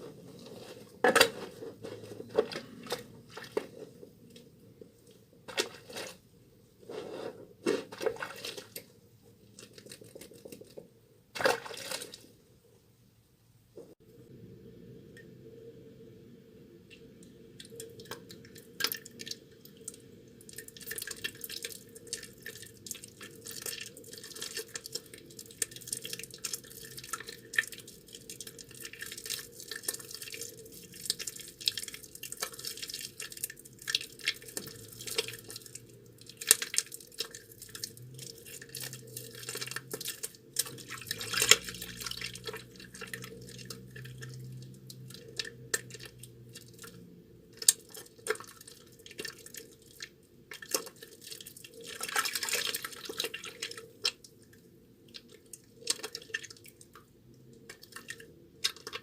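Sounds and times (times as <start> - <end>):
wet soap squelching between hands: 20.5 - 54.3.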